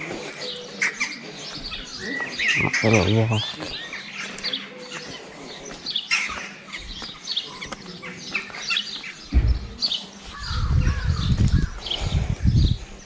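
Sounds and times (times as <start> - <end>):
songbirds chirping: 0.0 - 13.0
low rumbling on microphone: 9.3 - 13.0.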